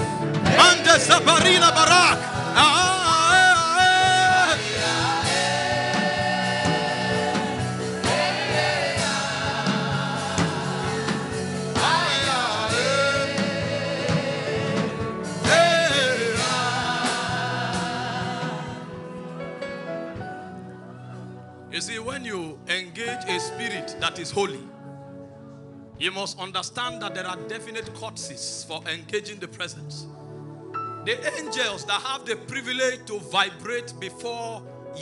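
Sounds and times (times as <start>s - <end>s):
steady musical accompaniment: 0.0s - 35.0s
gospel choir singing: 0.1s - 20.2s.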